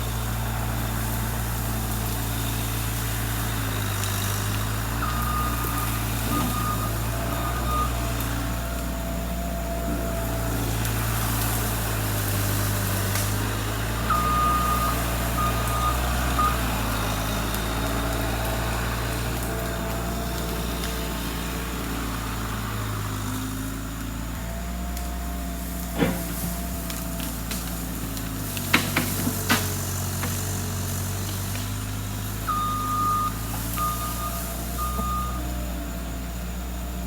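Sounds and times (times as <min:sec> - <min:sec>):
heavy machine engine running: 0:00.0 - 0:37.0
backup alarm beeping: 0:05.0 - 0:10.5, 0:14.0 - 0:18.1, 0:32.5 - 0:35.6.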